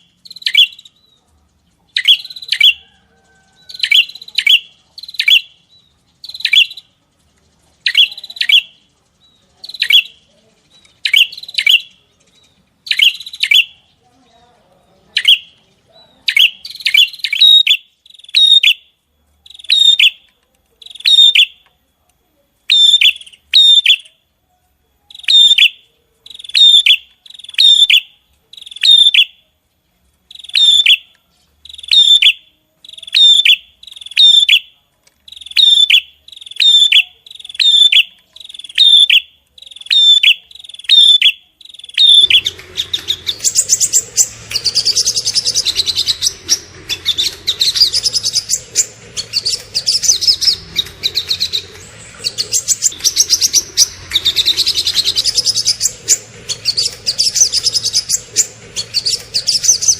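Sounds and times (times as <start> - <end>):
bird twittering: 0.0 - 1.2, 1.9 - 7.0, 7.8 - 14.0, 15.0 - 18.8, 19.4 - 21.6, 22.7 - 24.2, 25.1 - 29.4, 30.3 - 34.7, 35.3 - 59.9
songbird downward-sweeping call: 30.3 - 31.1, 35.3 - 59.9
low background hum: 42.0 - 59.9.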